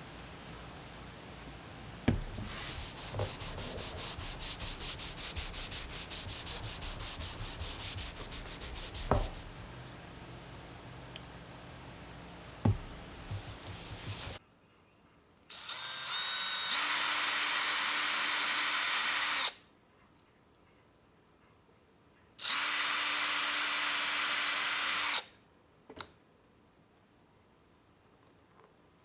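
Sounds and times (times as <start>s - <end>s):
sandpaper rubbing on wood: 2.1s - 10.0s, 12.6s - 14.4s.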